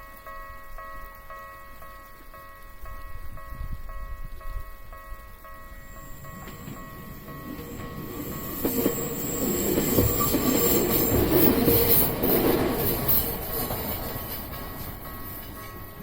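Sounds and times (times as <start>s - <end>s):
faint crossing warning bell: 0.0s - 16.0s
electric train passing: 2.3s - 16.0s.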